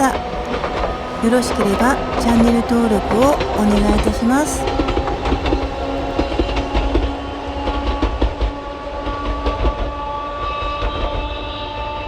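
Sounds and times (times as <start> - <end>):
wheels clicking on rails: 0.0 - 6.9
electric train running: 0.0 - 10.0.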